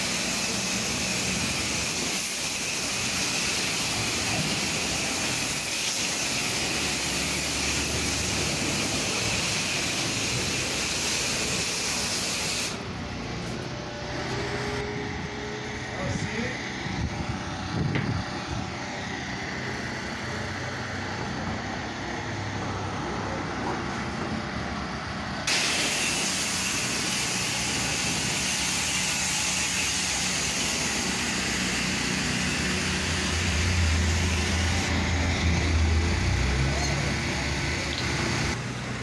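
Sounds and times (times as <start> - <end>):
pressure washer spray hissing: 0.0 - 12.8, 25.5 - 34.9
pressure washer motor hum: 0.0 - 39.0.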